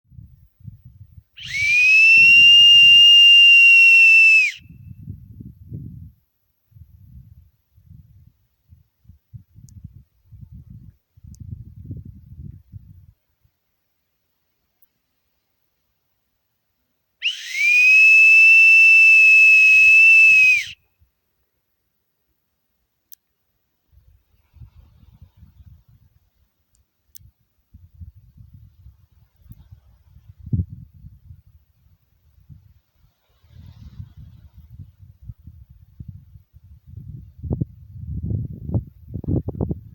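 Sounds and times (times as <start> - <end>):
whistle blown shrill note: 1.4 - 4.8, 17.2 - 20.8.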